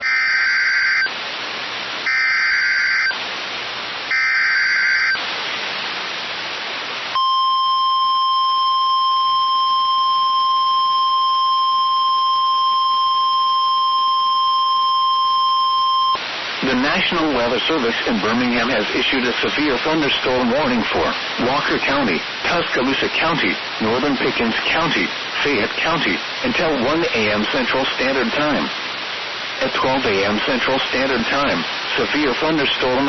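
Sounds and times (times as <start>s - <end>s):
screechy data tone bursts: 0.0s - 1.1s, 2.1s - 3.2s, 4.1s - 5.2s
steady warning alarm tone: 0.0s - 1.1s, 2.1s - 3.2s, 4.1s - 5.2s, 7.2s - 16.2s
radio hiss: 8.0s - 33.0s.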